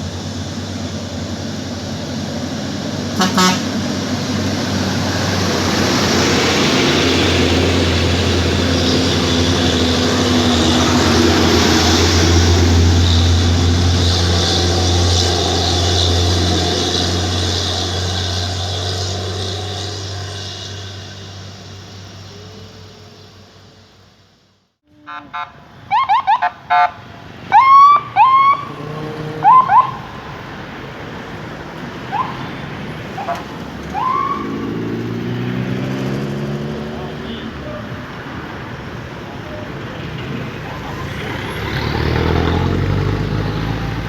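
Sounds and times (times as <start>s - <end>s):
heavy vehicle engine passing: 0.0s - 24.4s, 27.0s - 44.0s
vehicle horn toots: 3.2s - 3.8s, 24.9s - 25.6s, 37.1s - 37.9s.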